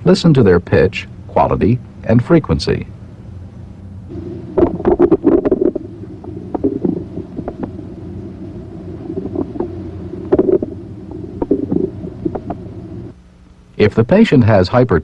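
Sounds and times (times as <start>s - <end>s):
steady low rumble: 0.0s - 14.2s
bowel gurgles and clicks: 4.6s - 5.8s, 6.5s - 7.8s, 9.1s - 10.8s, 11.4s - 12.6s.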